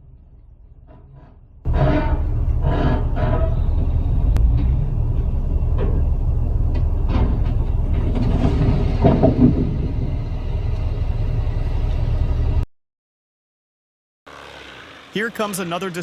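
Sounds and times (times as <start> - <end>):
knocks and clatters: 0.7 - 10.9
heavy vehicle engine running: 1.6 - 12.6.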